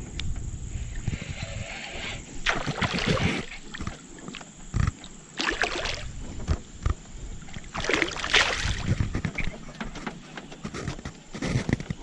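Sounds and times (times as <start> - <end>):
water splashing from thrashing fish: 2.4 - 4.4, 5.4 - 6.2, 7.5 - 9.0.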